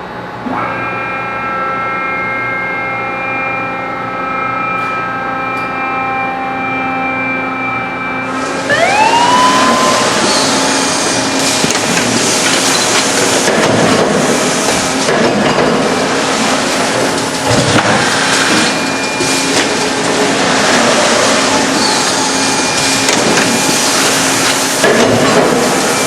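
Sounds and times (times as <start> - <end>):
motor whine: 0.0 - 13.3
machinery hum: 0.0 - 26.0.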